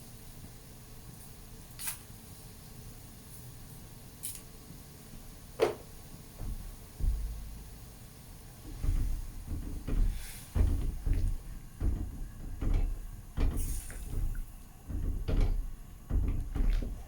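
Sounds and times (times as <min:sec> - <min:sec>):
utensil knocking against cooking pot: 0:08.7 - 0:17.0.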